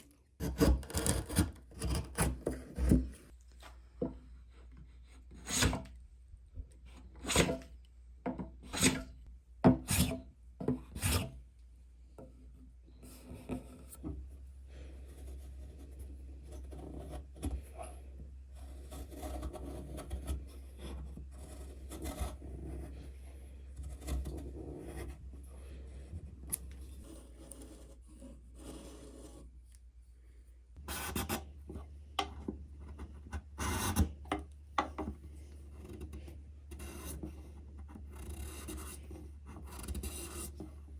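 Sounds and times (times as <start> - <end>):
hand tool scraping wood: 5.2 - 5.9, 7.1 - 7.7, 8.6 - 9.2, 10.9 - 11.4
rubbing and scraping on wood: 8.6 - 9.2.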